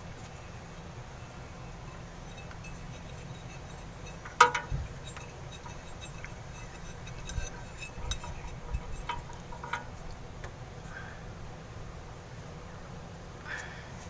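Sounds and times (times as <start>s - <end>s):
light clicks and clinks: 2.2s - 10.2s.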